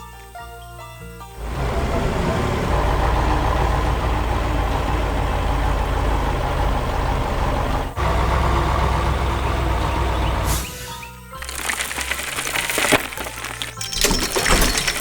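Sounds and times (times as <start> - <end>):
truck diesel engine droning: 1.4 - 11.1.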